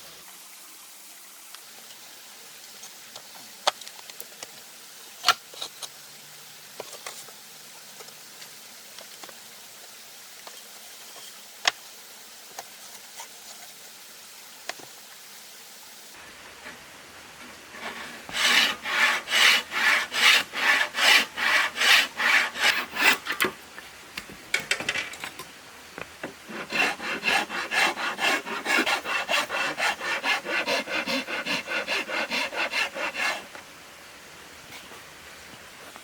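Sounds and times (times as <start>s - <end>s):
hand tool strokes on wood: 16.2s - 23.6s, 26.2s - 33.5s.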